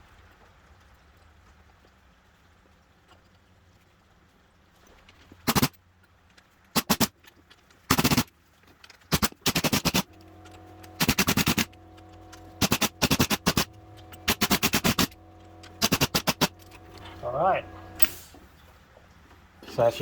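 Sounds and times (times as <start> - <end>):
impact wrench hammering: 9.2 - 18.3.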